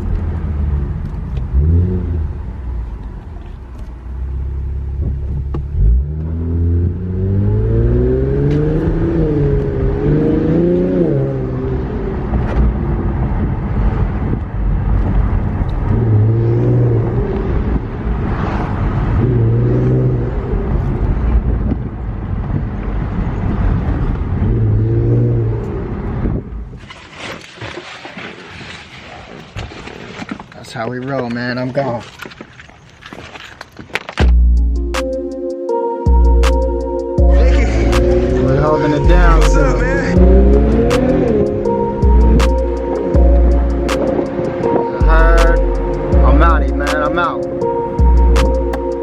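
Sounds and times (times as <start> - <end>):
car engine accelerating: 0.0 - 26.8, 36.1 - 49.0
steady low rumble: 36.1 - 49.0.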